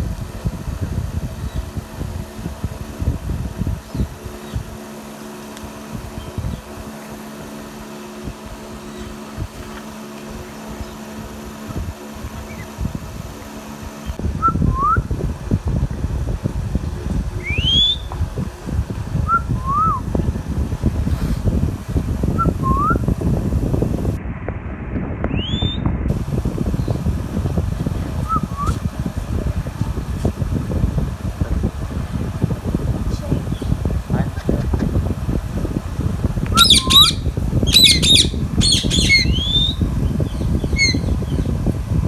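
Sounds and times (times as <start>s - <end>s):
steady low rumble: 0.0s - 42.0s
parrot whistling: 14.4s - 15.0s, 17.4s - 18.1s, 19.3s - 20.0s, 22.4s - 23.0s, 28.2s - 28.8s, 36.5s - 41.5s.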